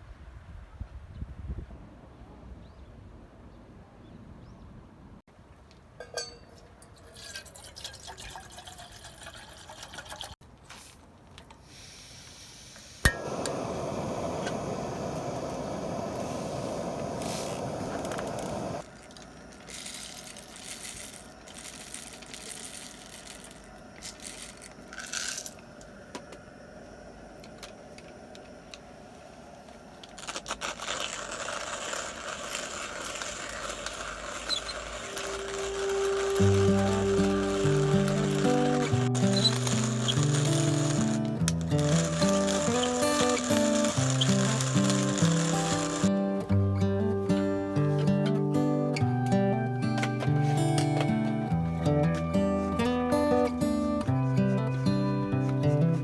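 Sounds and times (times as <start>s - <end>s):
cookware clinking: 6.0s - 10.3s
water pouring into a pot: 6.9s - 10.4s, 17.2s - 25.6s, 30.2s - 46.1s.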